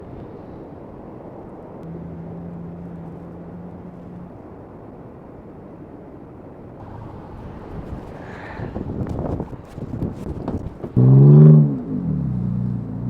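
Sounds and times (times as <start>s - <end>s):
low steady hum: 0.0s - 13.0s
traffic rumble: 0.0s - 13.0s
wind: 0.0s - 13.0s.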